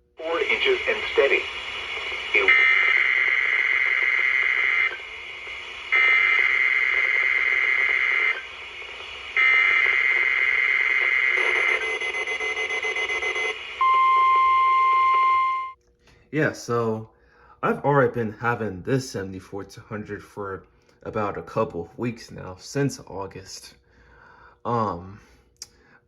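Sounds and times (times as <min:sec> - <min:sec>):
weather radio alert tones: 0:00.2 - 0:15.8.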